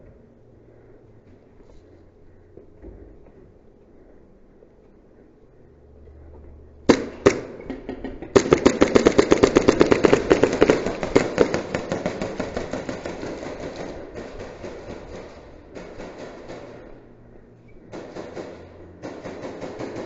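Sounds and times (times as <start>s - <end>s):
rapid automatic airsoft fire: 6.9s - 7.6s, 8.2s - 17.0s, 17.9s - 20.0s.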